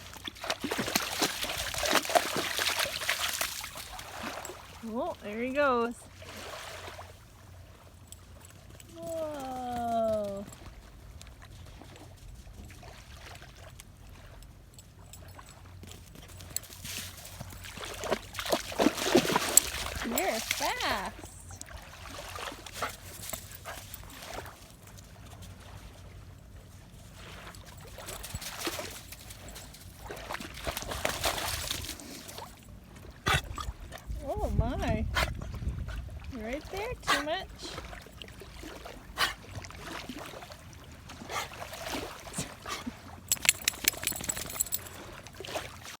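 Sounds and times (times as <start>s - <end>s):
dog paddling water splashes: 0.0s - 46.0s.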